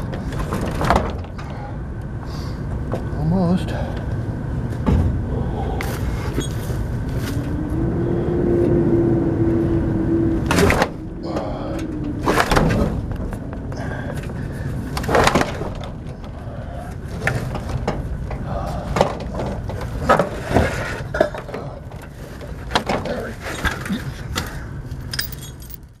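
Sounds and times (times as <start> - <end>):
steady low rumble: 0.0 - 26.0
rising hum: 1.3 - 20.7
heavy metal parts clattering: 17.1 - 26.0.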